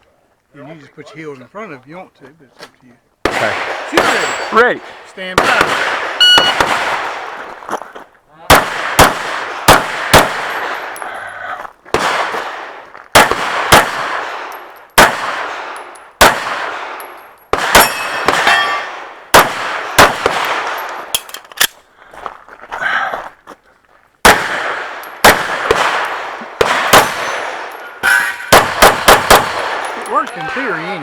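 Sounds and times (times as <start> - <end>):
handgun shots echoing: 5.4 - 7.3, 13.2 - 21.7, 24.2 - 30.8
shot timer beep: 6.2 - 6.6.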